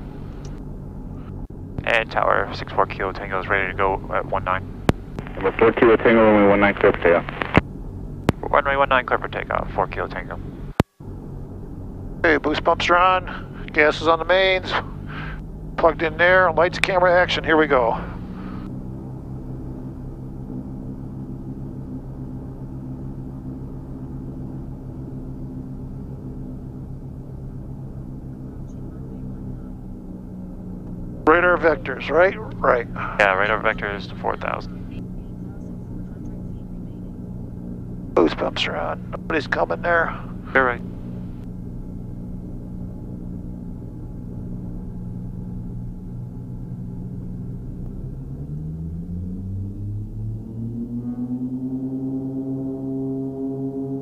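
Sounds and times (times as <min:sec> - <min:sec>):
twin propeller plane engines droning: 0:00.0 - 0:54.0.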